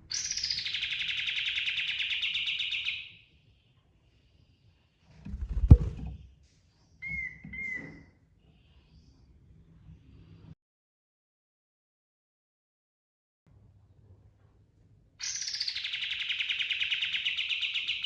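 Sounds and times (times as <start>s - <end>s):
sharp knock: 5.3s - 6.2s.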